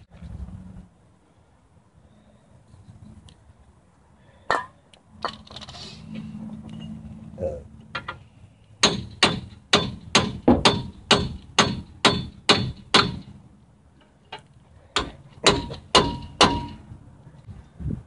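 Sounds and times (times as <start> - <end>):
hammer striking metal: 8.8 - 13.4, 15.0 - 16.9.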